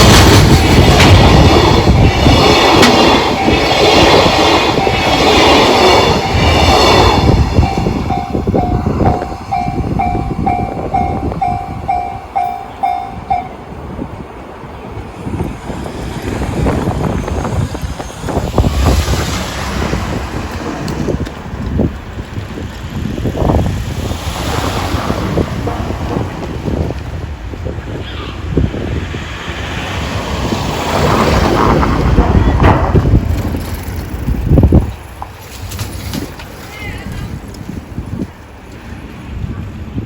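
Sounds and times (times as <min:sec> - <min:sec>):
level-crossing warning bell: 0:00.0 - 0:14.0
train wagons rolling over rails: 0:00.0 - 0:40.0.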